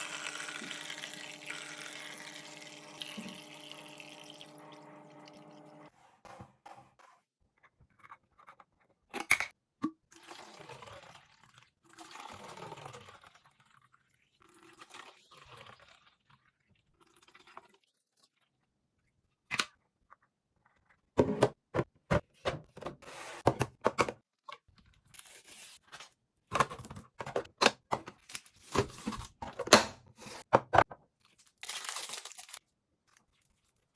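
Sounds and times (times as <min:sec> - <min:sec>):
containers being set down: 0:26.6 - 0:31.0
rustling of packaging: 0:31.1 - 0:33.9.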